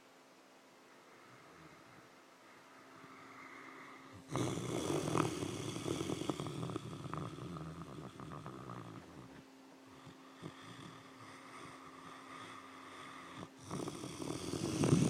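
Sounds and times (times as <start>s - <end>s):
dog snoring: 3.0s - 15.0s.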